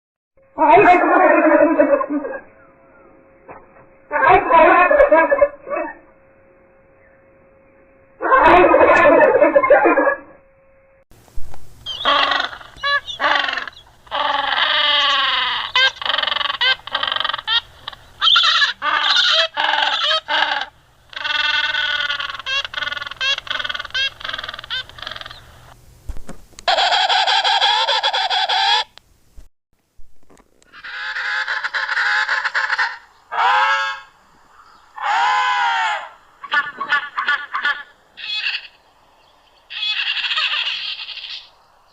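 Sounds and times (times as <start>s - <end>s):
honking creature calls: 11.9s - 25.5s, 26.7s - 28.9s, 30.7s - 34.2s, 35.0s - 38.8s, 39.7s - 41.5s.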